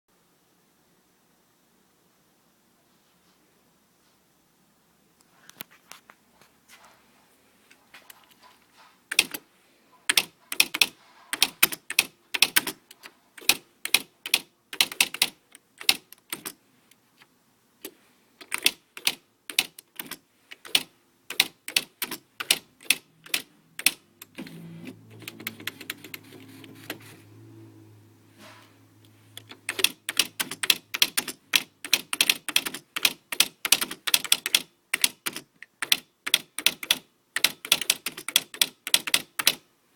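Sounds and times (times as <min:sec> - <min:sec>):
typewriter key strikes: 0:09.1 - 0:09.4, 0:10.1 - 0:12.8, 0:13.4 - 0:16.6, 0:18.4 - 0:24.4, 0:29.4 - 0:39.6.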